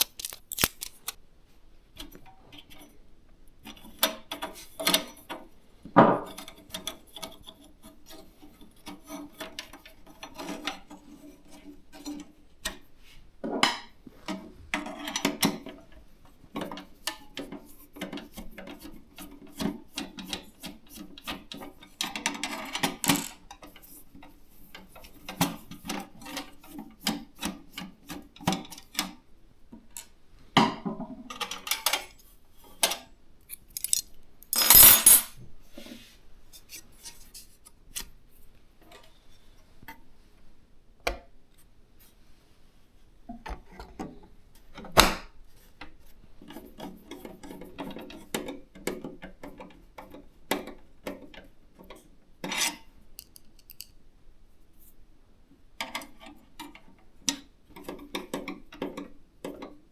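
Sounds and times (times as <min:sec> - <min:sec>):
parts rubbing and scraping: 0:00.0 - 0:01.2, 0:33.5 - 0:35.3
computer parts clicking and tapping: 0:33.5 - 0:34.8.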